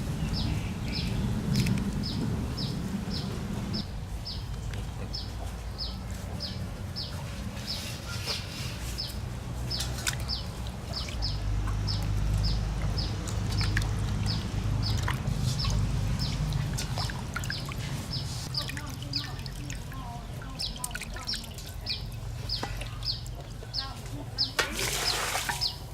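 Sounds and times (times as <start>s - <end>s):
low rumble: 0.0s - 4.4s
bird chirping: 0.1s - 4.4s.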